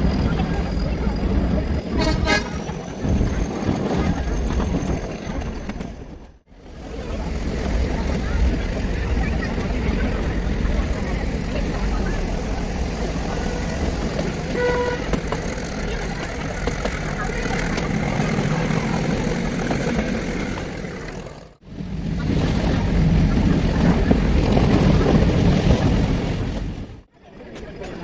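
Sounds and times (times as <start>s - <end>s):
train rumbling: 0.0s - 28.0s
train horn toot: 1.9s - 2.8s, 14.4s - 15.6s.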